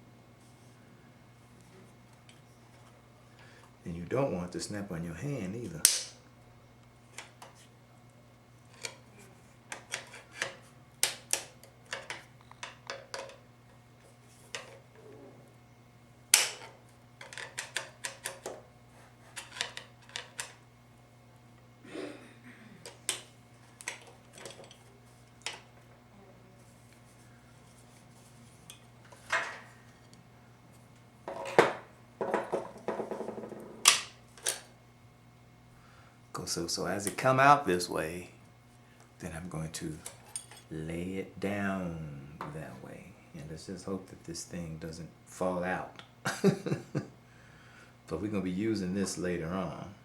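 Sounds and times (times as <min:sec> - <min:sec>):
metal parts clinking and tapping: 0:09.7 - 0:13.4, 0:16.4 - 0:18.6, 0:19.4 - 0:20.6, 0:22.8 - 0:25.9, 0:40.0 - 0:40.7
metal parts rattling: 0:23.8 - 0:25.7.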